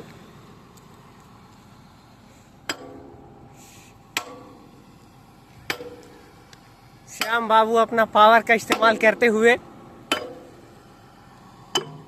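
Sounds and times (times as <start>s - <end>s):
ringing metal on metal strikes: 10.1s - 10.6s, 11.7s - 12.0s.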